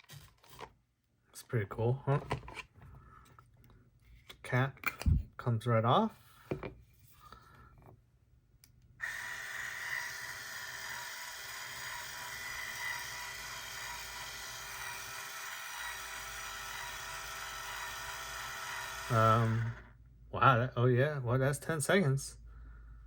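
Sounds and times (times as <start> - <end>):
grinding motor whirring: 9.0 - 19.9.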